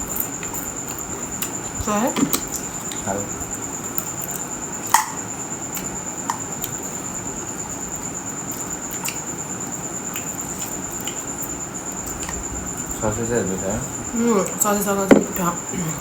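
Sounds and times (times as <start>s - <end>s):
cricket trill: 0.0s - 16.0s
chewing and mouth smacks: 0.1s - 1.6s, 3.9s - 7.0s, 8.5s - 9.3s, 10.0s - 12.4s.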